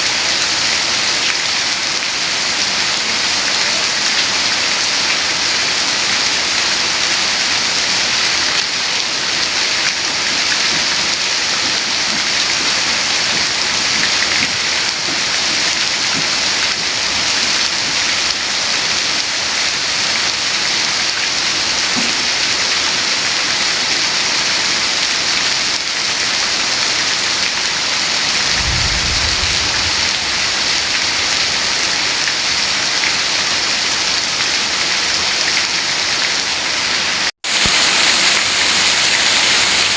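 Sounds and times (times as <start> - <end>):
heavy rain falling: 0.0 - 39.9
brief low rumble: 28.4 - 31.4.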